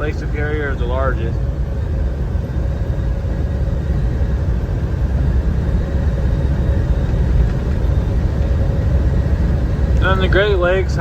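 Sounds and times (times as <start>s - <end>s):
faint hum: 0.0s - 11.0s
truck cabin road rumble: 4.4s - 11.0s.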